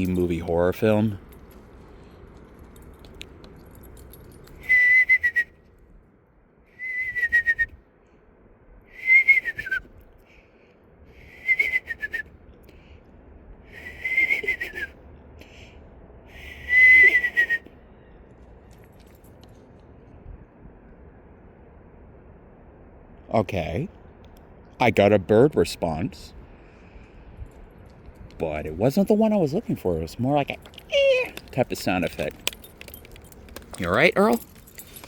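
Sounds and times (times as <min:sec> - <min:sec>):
high whistled call: 0:04.6 - 0:05.6, 0:06.7 - 0:07.8, 0:08.9 - 0:09.9, 0:11.2 - 0:12.3, 0:13.8 - 0:15.0, 0:16.4 - 0:17.7.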